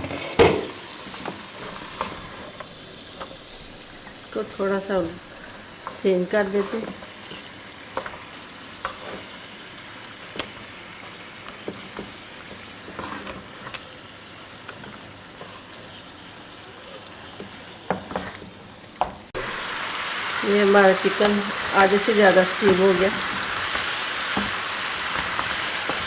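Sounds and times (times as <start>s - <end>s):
chicken sizzling in a pot: 0.0s - 26.0s.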